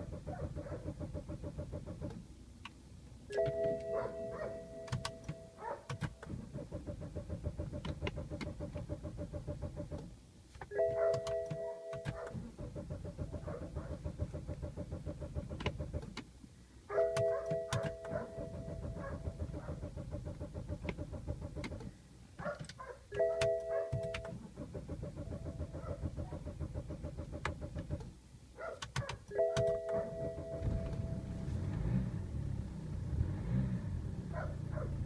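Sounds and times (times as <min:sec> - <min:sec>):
dashboard warning chime: 0:03.3 - 0:06.2, 0:10.7 - 0:12.3, 0:17.0 - 0:19.4, 0:23.1 - 0:24.4, 0:29.3 - 0:31.6
starter cranking engine: 0:05.0 - 0:10.1, 0:17.8 - 0:21.9, 0:24.0 - 0:28.1.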